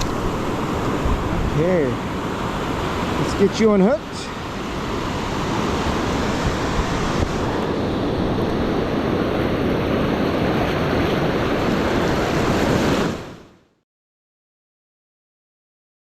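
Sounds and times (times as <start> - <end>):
wind buffeting microphone: 0.0 - 3.2, 4.4 - 13.2
ocean surf washing on beach: 0.0 - 13.6.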